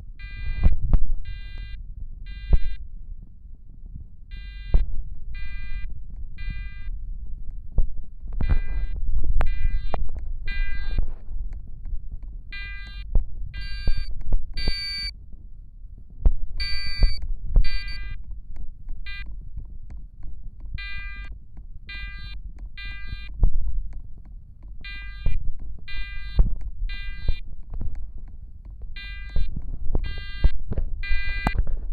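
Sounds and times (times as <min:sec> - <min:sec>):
fire alarm horns blaring: 0:13.6 - 0:15.1, 0:16.6 - 0:18.2.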